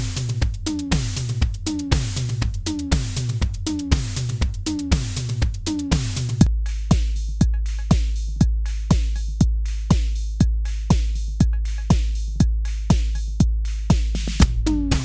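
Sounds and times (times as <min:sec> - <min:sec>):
snare or hi-hat hits: 0:00.0 - 0:15.0
deep sustained low boom: 0:06.3 - 0:13.8, 0:14.4 - 0:15.0
pitched drum machine hits: 0:13.9 - 0:15.0.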